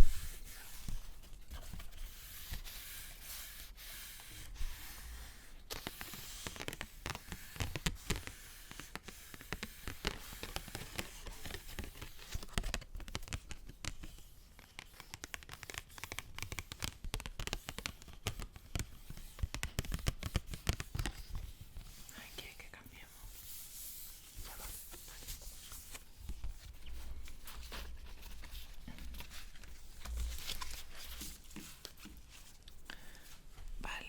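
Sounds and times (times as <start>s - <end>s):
paper crinkling: 24.4s - 32.9s.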